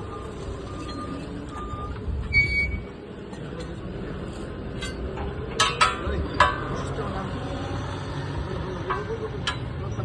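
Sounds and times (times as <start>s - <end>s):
reversing beeper beeps: 0.0s - 2.9s.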